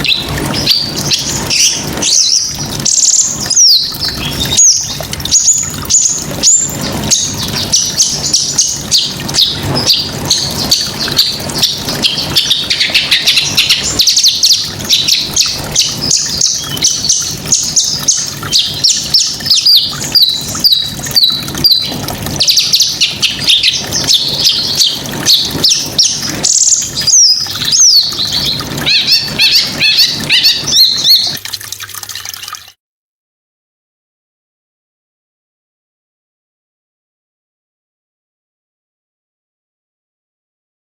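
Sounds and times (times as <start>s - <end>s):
songbird chirps and trills: 0.0s - 31.4s.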